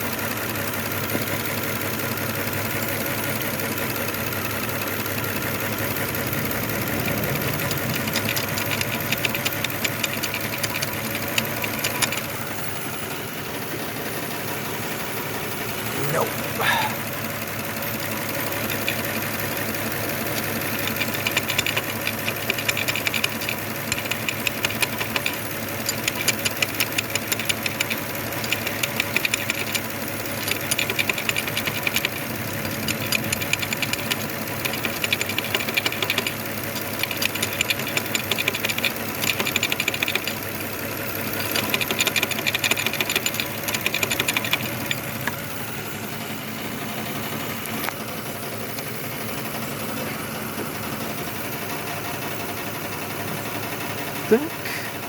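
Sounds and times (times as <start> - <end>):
car engine idling roughly: 0.0 - 55.0
rapid tapping on metal: 5.2 - 12.4, 18.2 - 45.4.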